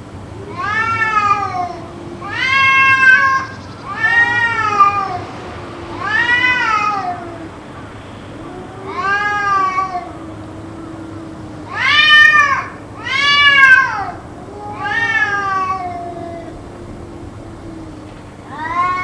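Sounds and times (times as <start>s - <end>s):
cat yowling: 0.3s - 7.6s, 8.4s - 19.0s
low steady drone: 15.8s - 19.0s.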